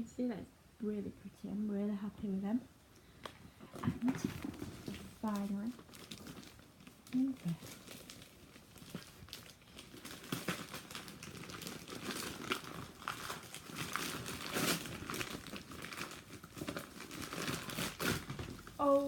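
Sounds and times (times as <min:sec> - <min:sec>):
wrapping paper crinkling: 0:04.0 - 0:19.0
paper tearing: 0:09.9 - 0:18.6.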